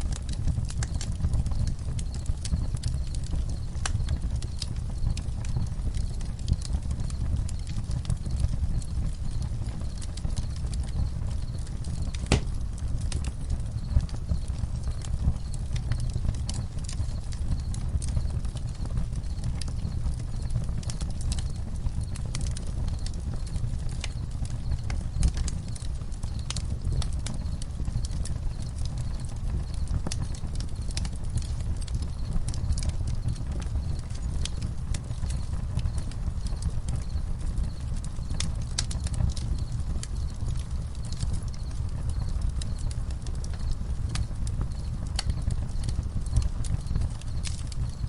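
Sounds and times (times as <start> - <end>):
campfire crackling and popping: 0.0 - 48.0
crickets chirping: 22.9 - 48.0.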